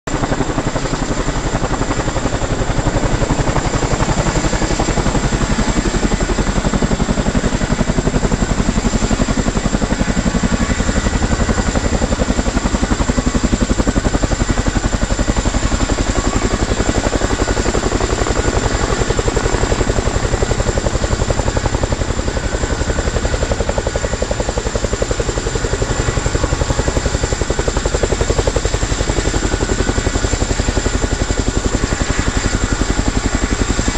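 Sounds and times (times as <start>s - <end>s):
helicopter rotor beat and whine: 0.0s - 33.9s.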